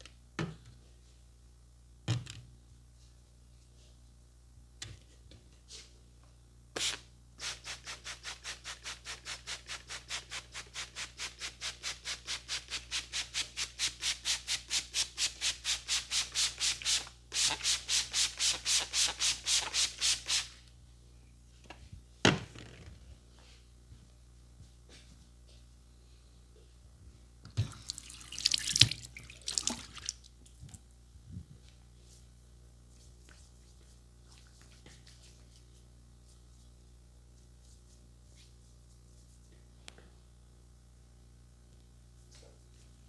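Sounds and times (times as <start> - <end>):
rhythmic rubbing of head: 37.4 - 39.6.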